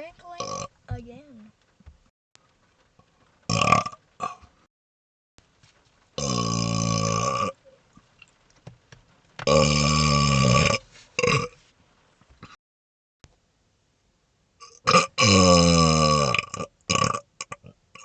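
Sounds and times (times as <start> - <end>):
man burping: 14.6 - 18.0.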